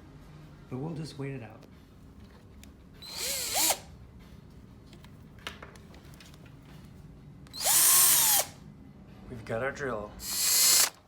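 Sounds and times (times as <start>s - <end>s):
cordless drill motor spinning: 3.0s - 3.9s, 7.5s - 8.6s, 10.2s - 11.0s.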